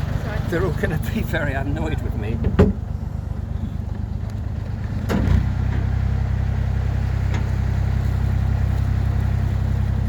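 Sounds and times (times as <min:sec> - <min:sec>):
boat engine running: 0:00.0 - 0:10.0
short knock: 0:02.4 - 0:02.8.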